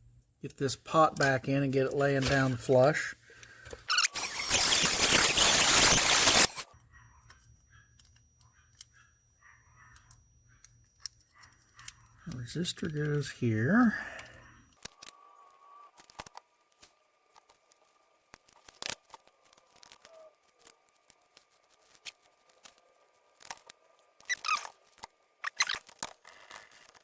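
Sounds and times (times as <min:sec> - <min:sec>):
scratchy rubs: 0:03.9 - 0:06.6.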